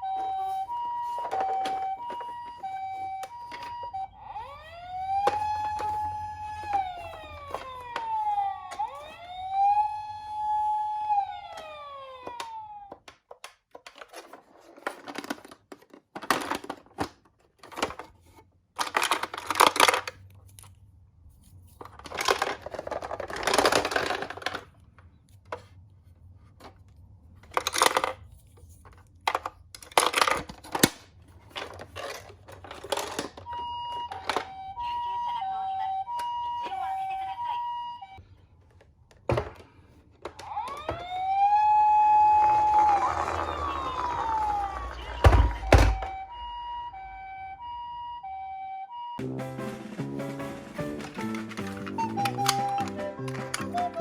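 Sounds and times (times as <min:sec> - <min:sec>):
electronic toy siren wailing: 0:00.0 - 0:13.0, 0:32.9 - 0:38.2, 0:40.3 - 0:49.2, 0:51.7 - 0:54.0
toy cars rattling down a track: 0:18.8 - 0:20.2, 0:21.9 - 0:24.8, 0:29.3 - 0:34.8, 0:41.8 - 0:46.0.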